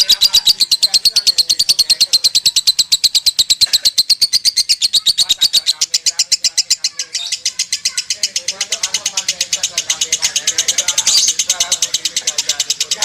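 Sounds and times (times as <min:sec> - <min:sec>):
lovebird chattering trill: 0:00.0 - 0:13.0.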